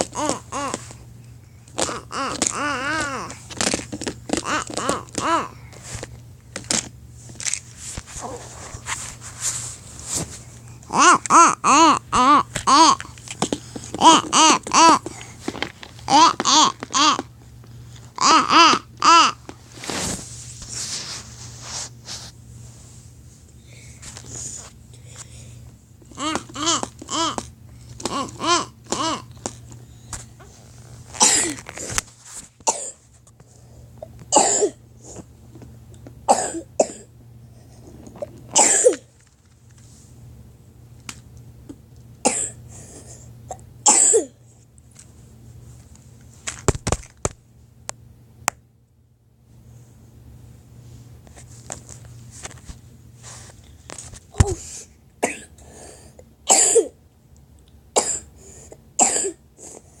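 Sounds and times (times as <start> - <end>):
child coughing: 0.0 - 0.8, 1.8 - 3.4, 4.4 - 5.6, 10.9 - 13.1, 14.0 - 15.2, 16.1 - 17.2, 18.2 - 19.4, 26.1 - 27.4, 28.0 - 29.3, 31.2 - 31.6, 32.6 - 33.0, 34.3 - 34.8, 36.3 - 37.1, 38.2 - 39.1, 42.2 - 42.6, 43.5 - 44.4, 54.4 - 55.6, 56.5 - 57.0, 58.0 - 58.3, 59.0 - 59.5
person coughing: 10.9 - 13.1, 31.2 - 31.7, 32.6 - 33.0, 34.3 - 34.8, 36.3 - 37.1, 38.2 - 39.1, 42.2 - 42.6, 43.5 - 44.4, 54.4 - 55.6, 56.5 - 57.0, 58.0 - 58.3, 59.0 - 59.5.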